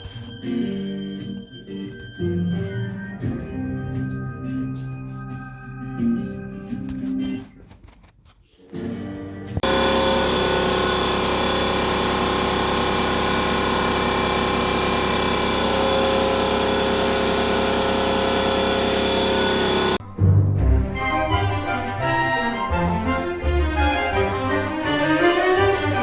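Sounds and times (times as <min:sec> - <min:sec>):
steady machine noise: 0:09.6 - 0:20.0.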